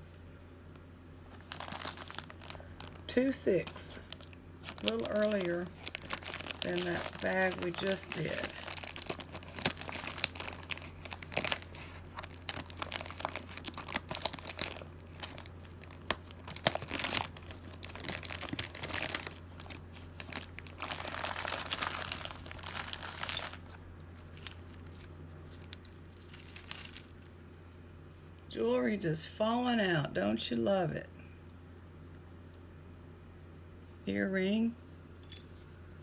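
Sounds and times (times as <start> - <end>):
plastic bag crinkling and tearing: 1.3 - 27.1.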